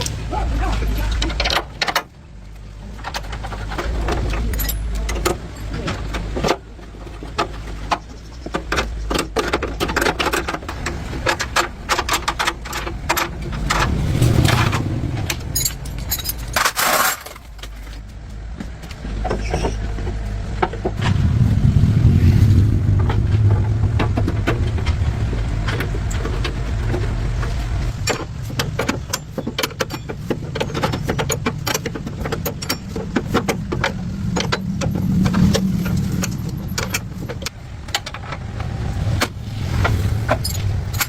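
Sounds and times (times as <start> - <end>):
metal tools clinking: 2.9 - 6.3, 11.2 - 18.0, 27.9 - 38.2, 40.2 - 41.0
low hum: 19.9 - 41.0.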